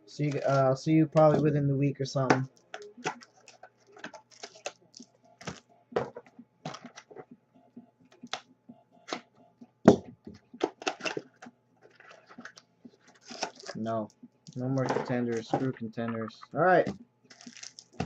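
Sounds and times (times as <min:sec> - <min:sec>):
faint steady hum: 0:00.0 - 0:18.0.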